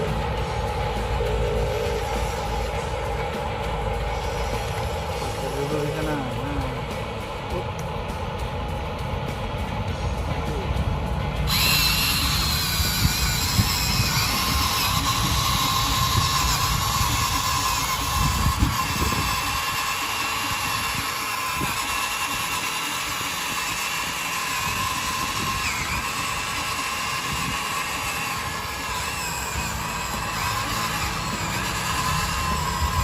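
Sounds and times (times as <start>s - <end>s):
rough low rumble: 0.0s - 21.7s
electric motor whining: 0.0s - 33.0s.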